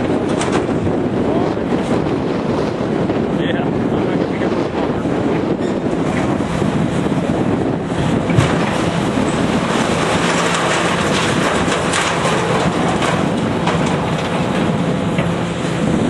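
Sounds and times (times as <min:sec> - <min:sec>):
diesel engine running: 0:00.0 - 0:16.0
metal clanking and scraping: 0:08.1 - 0:15.4.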